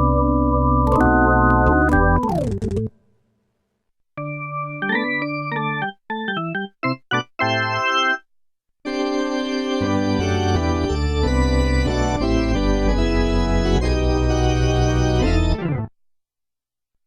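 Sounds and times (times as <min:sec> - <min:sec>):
synthesizer organ-like chords: 0:00.0 - 0:02.9, 0:08.9 - 0:15.9.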